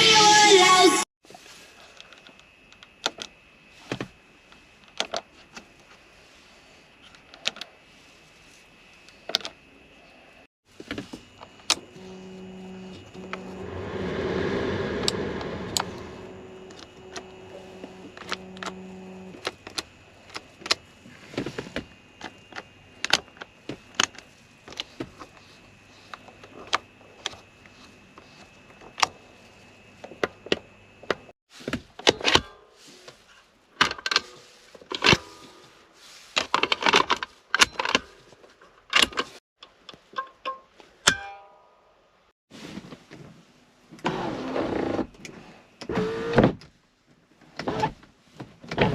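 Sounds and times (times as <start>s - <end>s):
electric motor hum: 11.9s - 19.4s.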